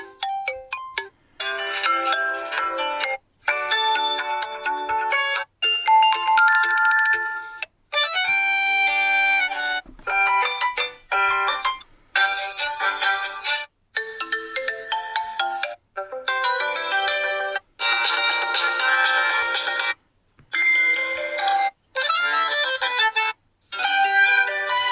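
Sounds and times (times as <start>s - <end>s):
electronic alarm ringtone melodies: 0.0s - 7.6s, 8.4s - 19.8s.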